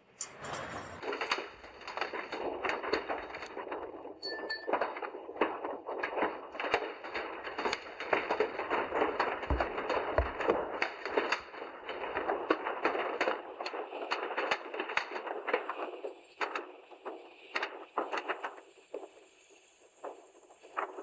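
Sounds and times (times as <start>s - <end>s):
rocks cracking and knocking: 1.1s - 18.7s
rockfall debris sliding: 4.8s - 12.2s.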